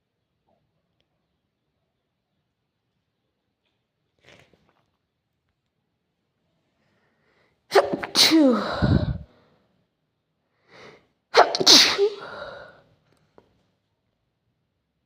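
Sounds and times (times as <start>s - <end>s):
person sneezing: 7.7s - 9.3s, 10.8s - 12.8s.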